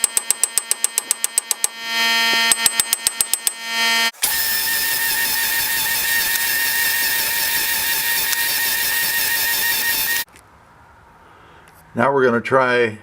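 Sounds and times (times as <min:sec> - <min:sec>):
pneumatic air hammer: 0:04.2 - 0:10.3.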